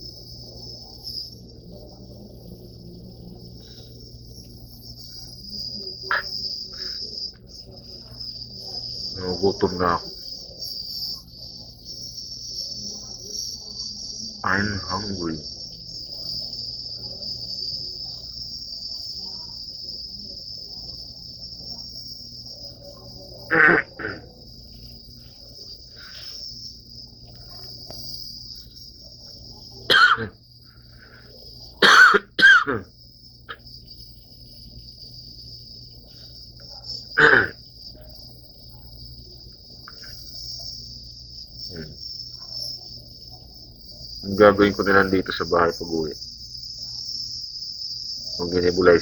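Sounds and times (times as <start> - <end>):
crickets chirring: 0.0 - 49.0
man coughing dryly: 23.5 - 24.2, 29.9 - 30.4, 31.8 - 32.9, 37.2 - 37.6.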